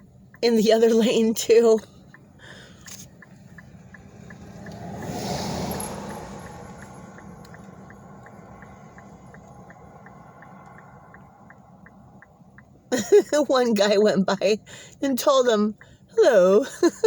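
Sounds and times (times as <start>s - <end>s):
car passing by: 3.6s - 12.3s
engine idling low: 5.8s - 15.0s.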